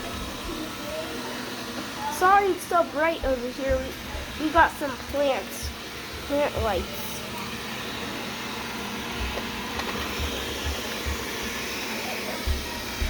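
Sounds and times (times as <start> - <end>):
robot vacuum running: 0.0 - 13.0
soft low thumps: 3.1 - 7.0, 9.2 - 11.6, 12.5 - 13.0.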